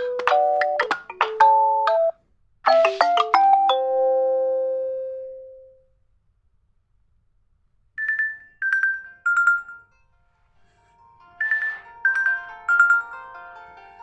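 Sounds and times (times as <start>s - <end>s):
bell-like ringtone notes: 2.7s - 4.9s, 8.0s - 9.9s, 11.4s - 13.6s.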